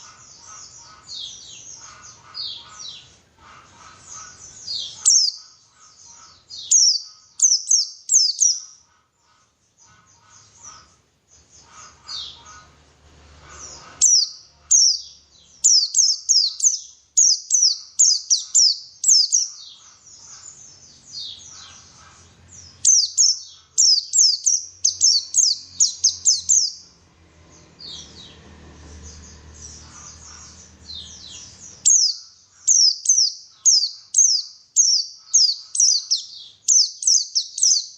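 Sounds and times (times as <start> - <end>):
bird chirping high thin chirps: 6.5 - 8.7, 14.0 - 20.5, 22.8 - 26.8, 30.3 - 37.9.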